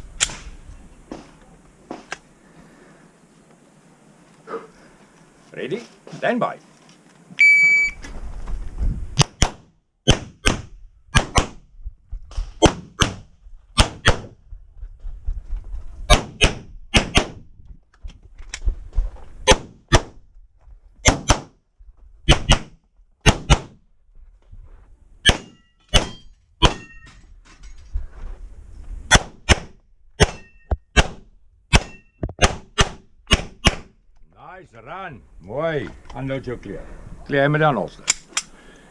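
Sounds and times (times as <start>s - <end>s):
short ringing tone: 7.4s - 8.0s
handgun shots: 25.3s - 27.0s, 29.1s - 33.9s.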